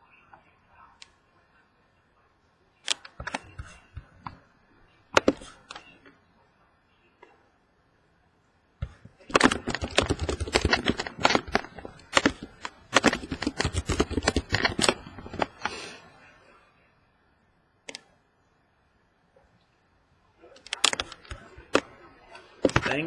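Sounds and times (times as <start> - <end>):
rapid keyboard typing: 2.8 - 4.4, 5.2 - 6.0, 8.8 - 16.0, 20.6 - 23.0.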